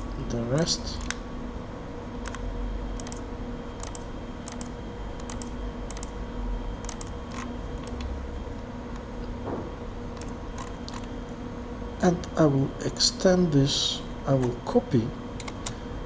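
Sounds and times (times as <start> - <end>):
low electrical hum: 0.0 - 16.0
keyboard and mouse clicks: 2.2 - 2.4, 3.0 - 3.2, 3.8 - 6.1, 6.8 - 8.1, 10.2 - 11.1, 15.4 - 15.8.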